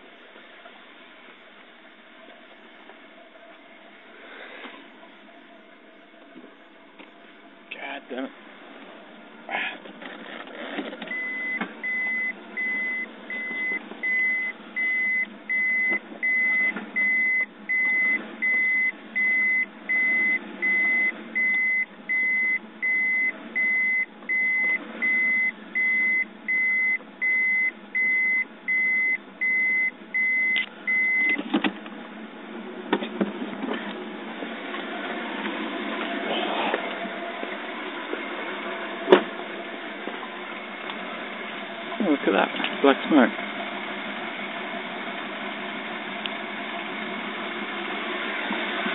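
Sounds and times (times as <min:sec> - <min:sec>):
high electronic beeps: 0:11.1 - 0:31.4.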